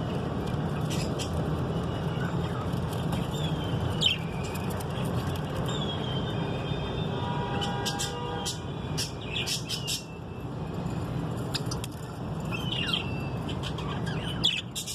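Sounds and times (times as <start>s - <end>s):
budgerigars chirping: 0.8s - 1.4s, 7.6s - 10.1s, 12.5s - 14.9s.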